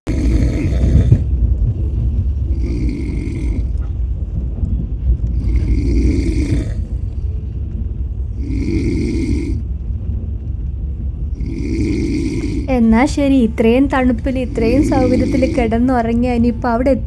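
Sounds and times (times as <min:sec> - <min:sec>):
person snoring: 0:00.0 - 0:01.3, 0:02.5 - 0:03.8, 0:05.3 - 0:07.0, 0:08.4 - 0:09.7, 0:11.4 - 0:12.9, 0:14.1 - 0:15.9
steady low rumble: 0:00.0 - 0:17.0.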